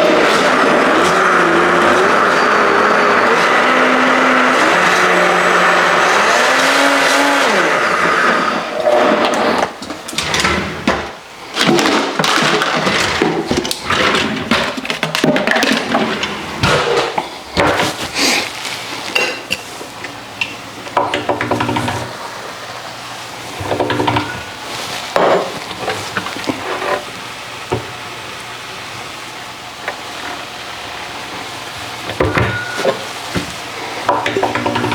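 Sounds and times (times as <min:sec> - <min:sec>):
blender motor whine: 0:00.0 - 0:09.7, 0:32.0 - 0:34.9.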